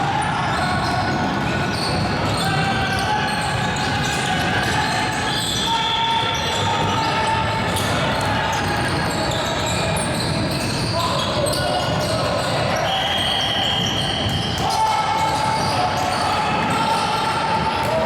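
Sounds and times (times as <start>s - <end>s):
murmur of voices: 0.0s - 18.0s
sneaker squeaks: 0.2s - 18.0s.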